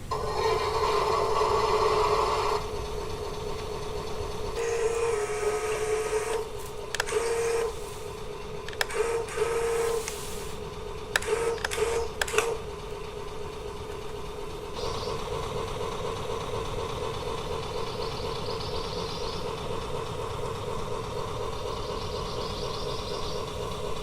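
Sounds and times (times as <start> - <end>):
small electric motors whirring: 0.1 - 13.0
sharp plastic clicks: 6.3 - 7.7, 8.6 - 10.2, 11.1 - 12.7.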